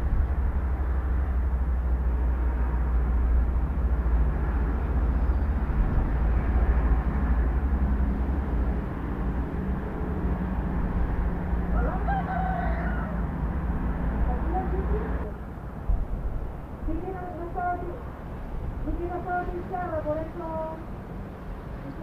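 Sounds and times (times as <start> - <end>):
rooster crowing: 11.7 - 13.5.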